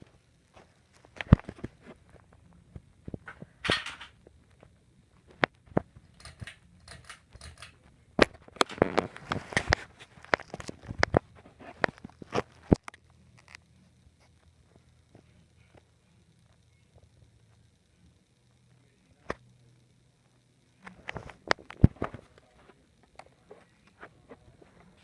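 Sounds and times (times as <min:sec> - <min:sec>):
crackling rustle: 0:00.0 - 0:18.7
faint low hum: 0:00.0 - 0:25.0
sharp clicks and knocks: 0:05.3 - 0:13.6.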